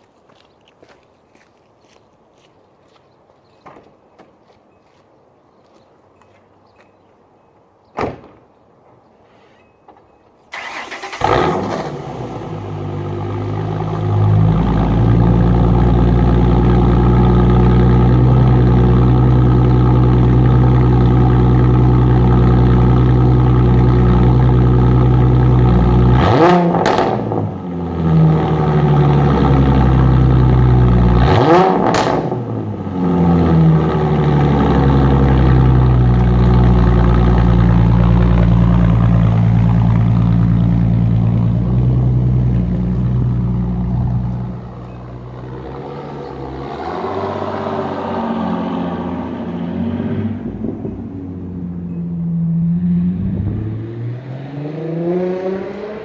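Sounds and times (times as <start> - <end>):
car engine idling: 10.6 - 26.2, 33.4 - 46.6
engine revving: 10.6 - 56.0.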